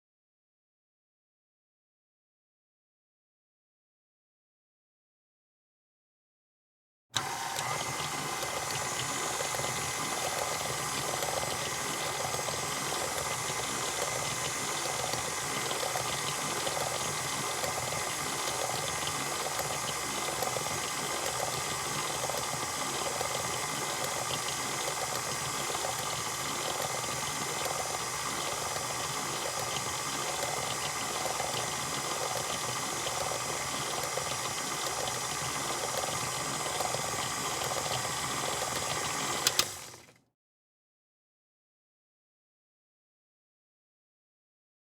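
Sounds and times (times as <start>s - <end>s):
electric mixer running: 7.2s - 40.2s.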